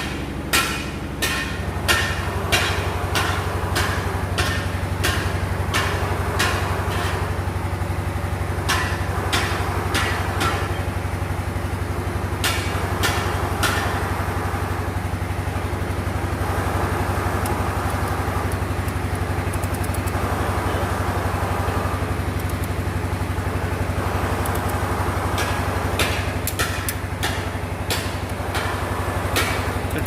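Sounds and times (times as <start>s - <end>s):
sharp knocks: 0.0s - 7.3s, 25.4s - 29.8s
engine idling: 0.0s - 30.0s.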